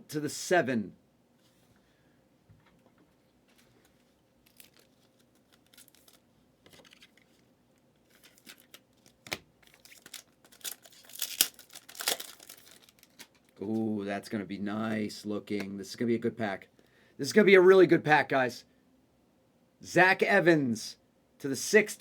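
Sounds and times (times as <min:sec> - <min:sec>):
wrapper crinkling and tearing: 0:04.4 - 0:07.4, 0:08.0 - 0:13.6.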